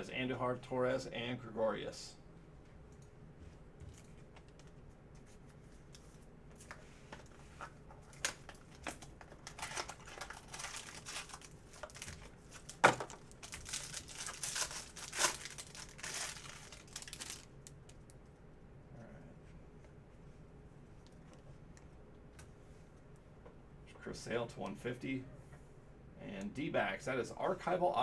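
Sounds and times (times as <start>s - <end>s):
wrapper tearing and crinkling: 8.1s - 18.1s.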